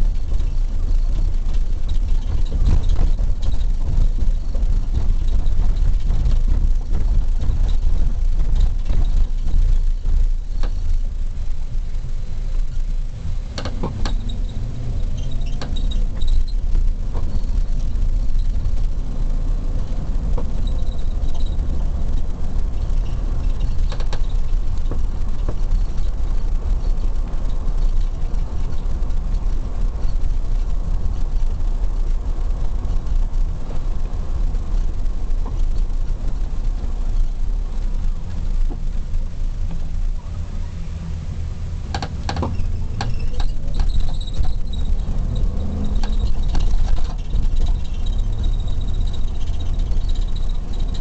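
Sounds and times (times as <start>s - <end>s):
car engine and road rumble: 0.0s - 51.0s.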